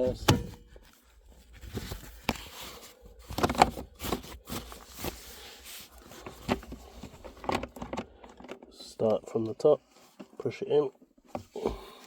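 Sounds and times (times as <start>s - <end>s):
rustling and scraping: 0.0s - 8.7s, 9.8s - 10.5s.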